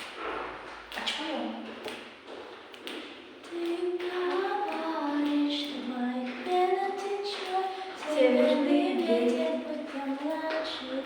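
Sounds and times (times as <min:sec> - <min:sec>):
young female voices singing: 0:03.4 - 0:11.0.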